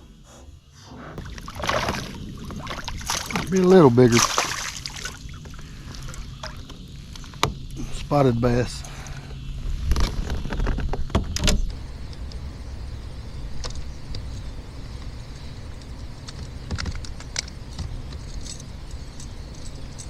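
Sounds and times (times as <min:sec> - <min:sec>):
gear clicks knocks and rattles: 0:15.8 - 0:20.0.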